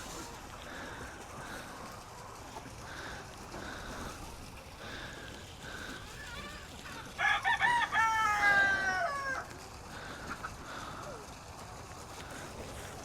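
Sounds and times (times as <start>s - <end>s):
rooster crowing: 7.2s - 9.5s.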